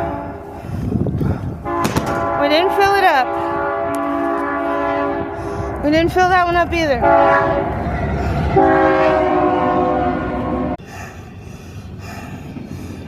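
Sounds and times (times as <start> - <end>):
train horn blasting: 0.0 - 0.6, 1.6 - 10.8
low rumble of train: 0.0 - 13.0.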